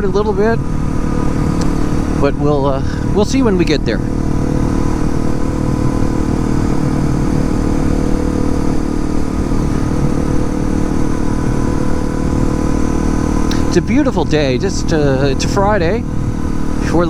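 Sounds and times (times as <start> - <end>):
motorcycle engine running steadily: 0.0 - 17.0.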